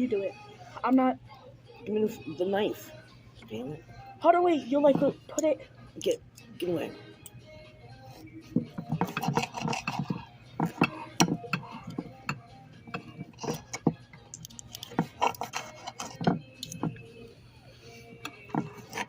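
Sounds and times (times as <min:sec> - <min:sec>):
knife and fork scraping a plate: 0:08.7 - 0:14.0, 0:14.7 - 0:17.0, 0:18.1 - 0:19.0.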